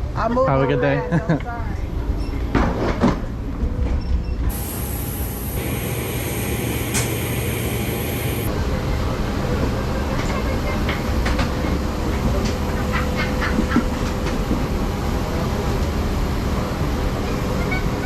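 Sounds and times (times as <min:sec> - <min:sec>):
high hiss: 0:04.5 - 0:08.5
low rumble of jet bridge: 0:04.5 - 0:08.5.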